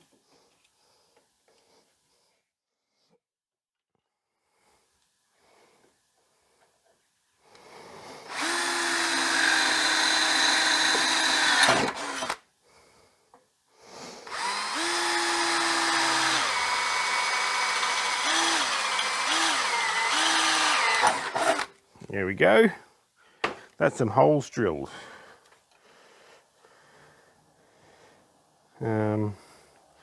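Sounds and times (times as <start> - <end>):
power drill boring through steel: 8.2 - 12.4, 14.2 - 21.8.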